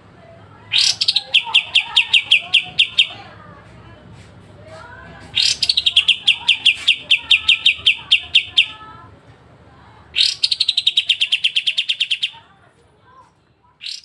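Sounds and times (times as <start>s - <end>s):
bird singing piercing notes: 0.7s - 3.3s, 5.4s - 8.8s, 10.2s - 12.4s.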